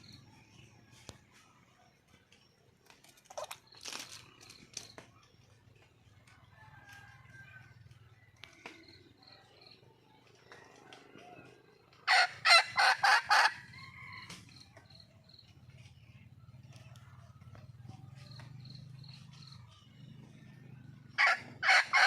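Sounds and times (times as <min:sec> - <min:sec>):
junglefowl hen calling: 0:11.2 - 0:14.4, 0:21.2 - 0:22.0.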